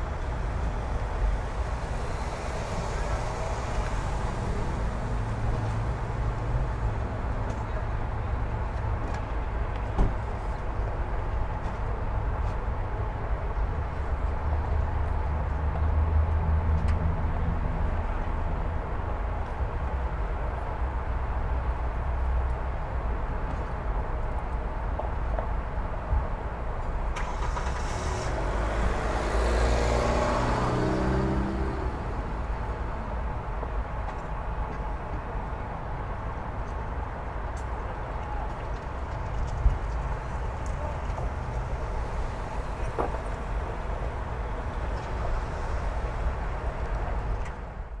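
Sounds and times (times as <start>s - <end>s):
freeway traffic rumble: 0.0s - 48.0s
car passing close: 0.4s - 7.0s, 27.1s - 33.0s.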